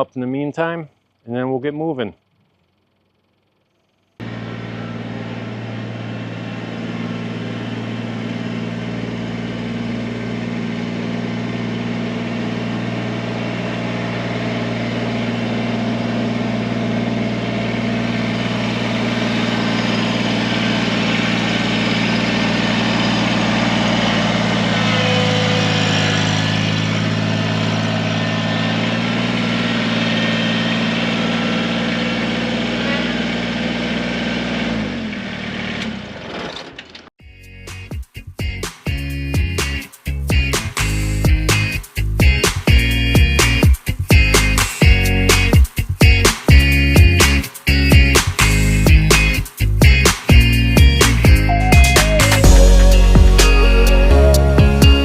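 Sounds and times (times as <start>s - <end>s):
tractor diesel engine idling: 4.2s - 36.4s.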